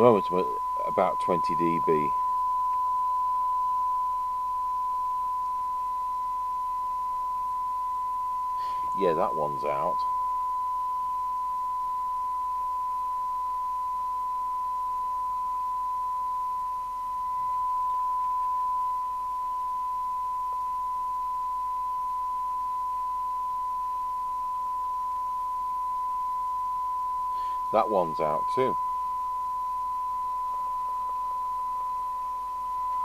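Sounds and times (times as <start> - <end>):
steady radio test tone: 0.0 - 33.0.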